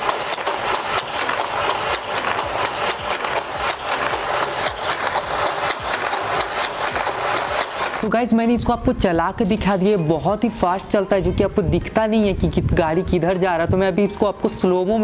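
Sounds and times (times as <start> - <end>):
rapid clicks: 0.0 - 8.1
toy booster motors whirring: 0.0 - 8.1
toy car clattering on plastic track: 0.0 - 8.1.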